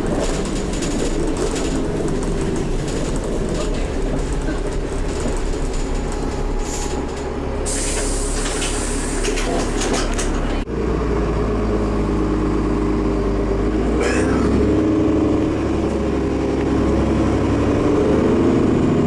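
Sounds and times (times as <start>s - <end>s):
bus diesel engine running: 0.0s - 19.0s
air hissing: 7.7s - 9.4s.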